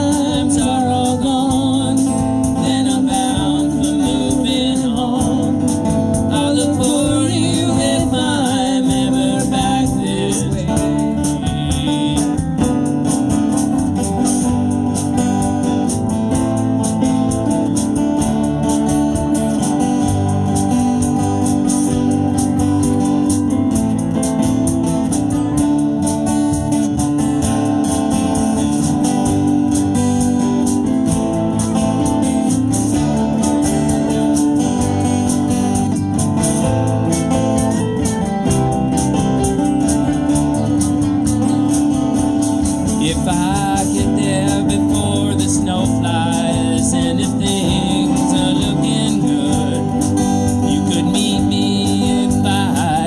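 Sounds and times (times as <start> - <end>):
person singing: 0.0 - 13.0, 38.5 - 53.0
live band music: 0.0 - 53.0.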